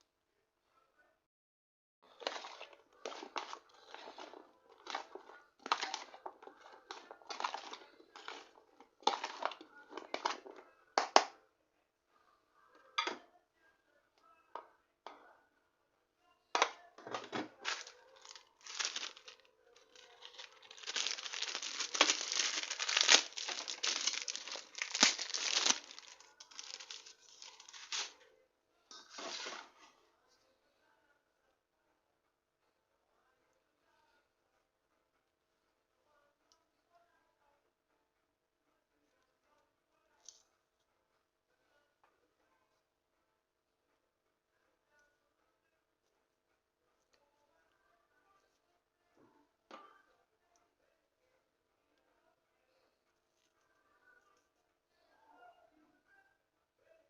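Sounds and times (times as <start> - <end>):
packaging crinkling: 2.2 - 6.2, 6.9 - 9.6, 17.6 - 28.1.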